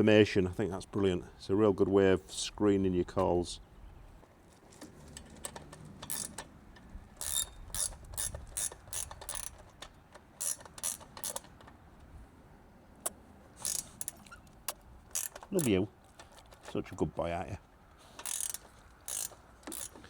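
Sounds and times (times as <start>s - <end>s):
hand ratchet clicking: 5.5s - 6.5s, 7.2s - 9.8s, 10.4s - 11.6s, 13.6s - 15.8s, 18.2s - 20.0s.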